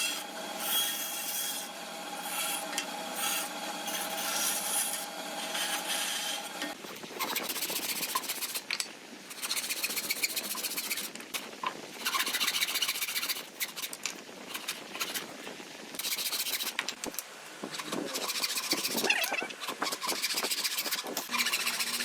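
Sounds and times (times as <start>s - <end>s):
hand tool rubbing over wood: 17.6s - 22.0s.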